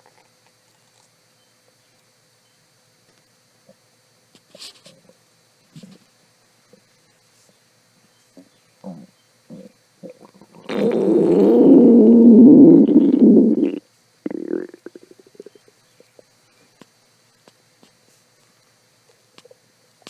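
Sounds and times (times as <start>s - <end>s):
stomach growling: 8.8s - 15.6s.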